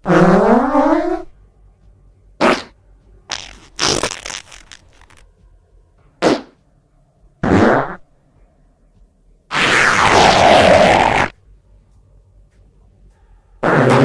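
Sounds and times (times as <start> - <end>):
farts: 0.0 - 1.3, 2.4 - 5.2, 6.2 - 6.6, 7.4 - 8.0, 9.5 - 11.4, 13.6 - 14.0.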